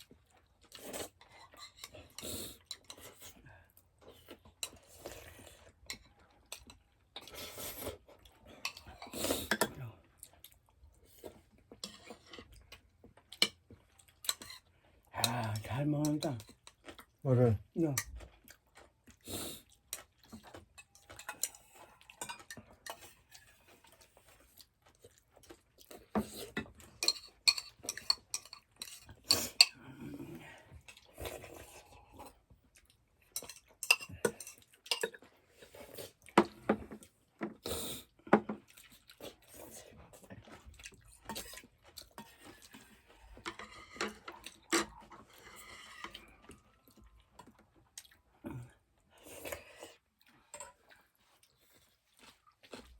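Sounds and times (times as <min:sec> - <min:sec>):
cutlery clinking on dishes: 0:20.4 - 0:23.2, 0:26.2 - 0:29.8, 0:33.4 - 0:35.2, 0:43.4 - 0:46.3.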